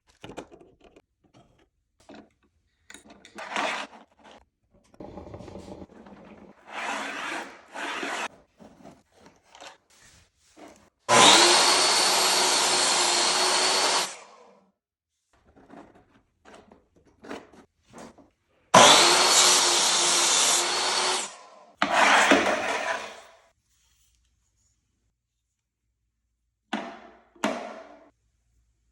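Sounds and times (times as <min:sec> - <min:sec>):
table saw cutting wood: 0:06.6 - 0:08.3, 0:11.1 - 0:14.6, 0:18.8 - 0:23.3.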